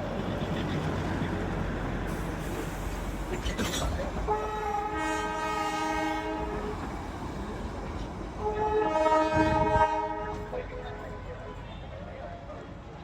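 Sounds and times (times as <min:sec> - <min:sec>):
train rumbling: 0:00.0 - 0:13.0
two-note train horn: 0:04.3 - 0:06.7, 0:08.4 - 0:10.8.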